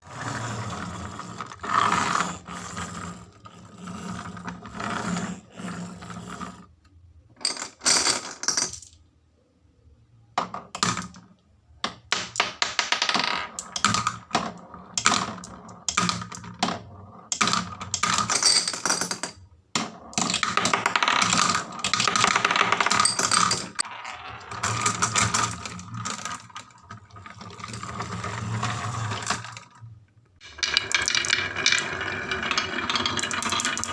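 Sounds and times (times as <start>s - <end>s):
marbles clattering down wooden run: 20.1s - 29.8s, 30.4s - 33.9s.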